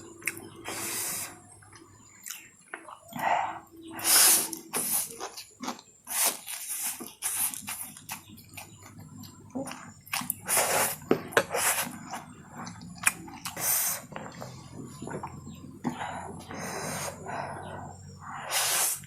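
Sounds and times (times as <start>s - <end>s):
wet chewing: 0.0s - 19.0s
slurping noodles: 3.2s - 8.7s, 9.6s - 19.0s.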